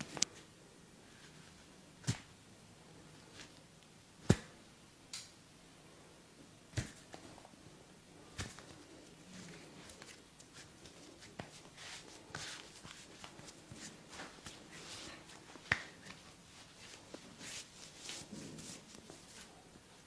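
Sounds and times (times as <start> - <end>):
hands rubbing during massage: 9.4 - 19.5.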